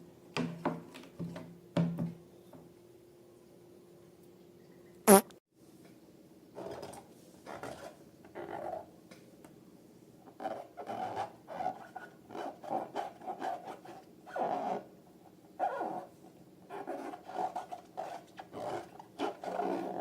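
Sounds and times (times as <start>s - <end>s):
wet fart-like pops: 5.1s - 5.3s.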